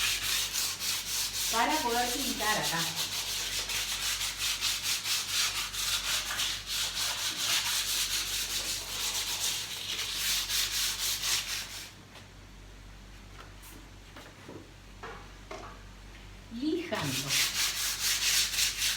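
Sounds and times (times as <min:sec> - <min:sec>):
sanding strokes on surface: 0:00.0 - 0:12.0, 0:17.0 - 0:18.9.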